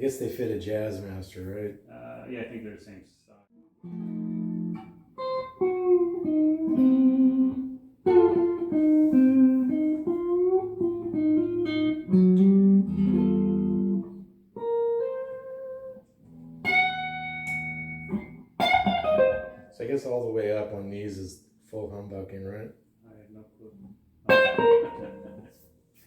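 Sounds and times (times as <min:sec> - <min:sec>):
clean electric guitar playing: 0:03.6 - 0:19.8, 0:24.2 - 0:25.7.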